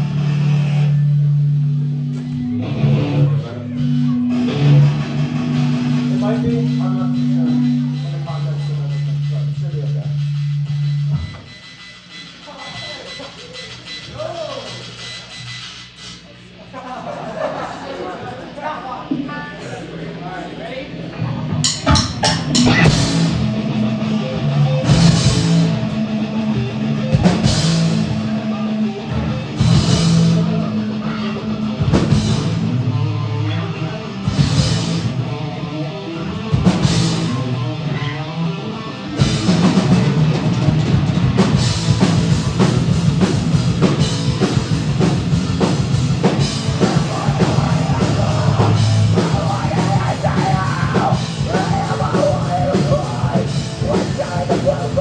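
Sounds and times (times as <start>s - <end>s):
heavy metal band playing: 0.0s - 15.4s, 16.8s - 55.0s
cymbal crashes: 21.5s - 24.2s.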